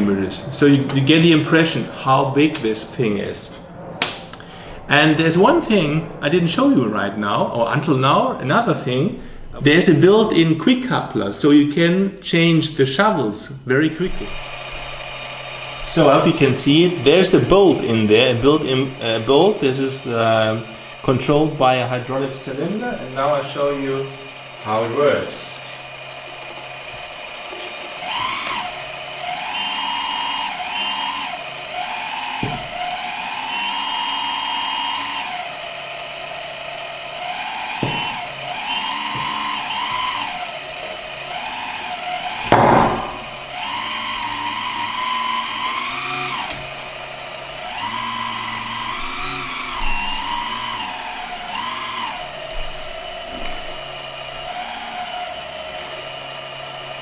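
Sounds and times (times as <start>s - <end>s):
hydraulic pump whining: 13.8s - 57.0s
sharp knock: 42.5s - 43.2s.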